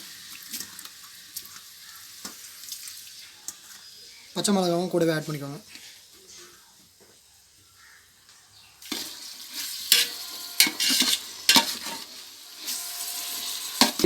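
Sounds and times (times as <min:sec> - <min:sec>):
masala sizzling in oil: 0:00.0 - 0:14.0
spoon scraping a pot: 0:08.9 - 0:14.0.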